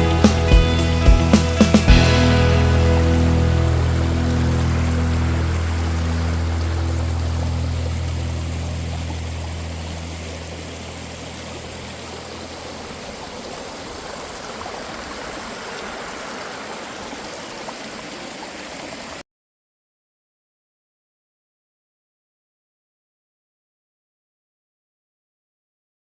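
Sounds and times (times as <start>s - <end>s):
low background music: 0.0s - 11.5s
stream flowing: 0.0s - 19.2s.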